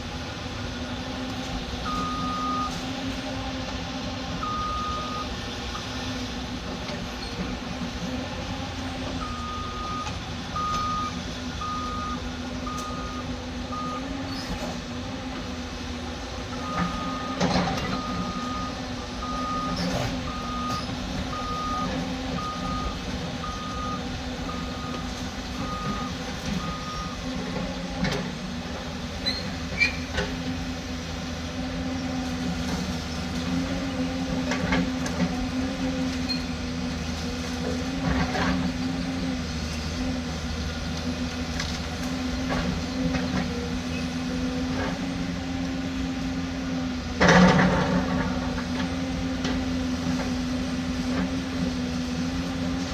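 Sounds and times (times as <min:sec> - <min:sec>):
diesel engine running: 0:00.0 - 0:52.9
reversing alarm beeping: 0:01.8 - 0:02.8, 0:04.4 - 0:06.0, 0:09.2 - 0:14.1, 0:16.6 - 0:27.3.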